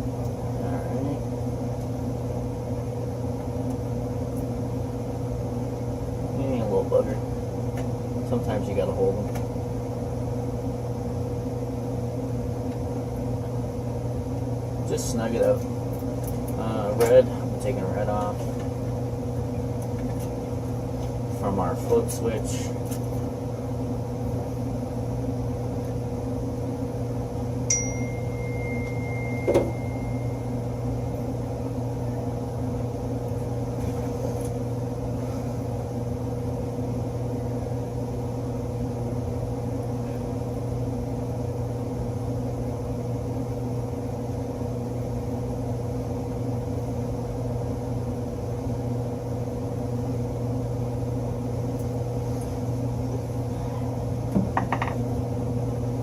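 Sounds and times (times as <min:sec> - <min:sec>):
electrical hum of hvac unit: 0:00.0 - 0:56.0
metallic click with ring: 0:27.7 - 0:30.0.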